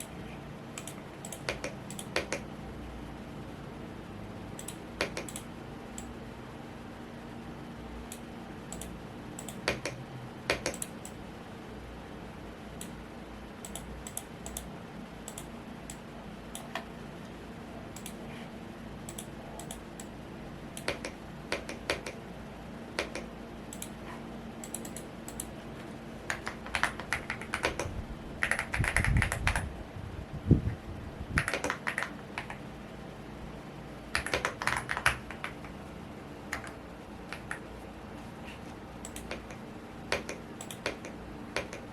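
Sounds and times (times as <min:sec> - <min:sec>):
mechanical keyboard typing: 0:00.0 - 0:02.5, 0:04.6 - 0:06.1, 0:08.1 - 0:11.2, 0:13.6 - 0:16.0, 0:19.0 - 0:20.1, 0:24.6 - 0:25.5, 0:26.3 - 0:29.7, 0:31.4 - 0:32.6, 0:34.1 - 0:35.8, 0:39.0 - 0:41.9
fan hum: 0:00.0 - 0:41.9.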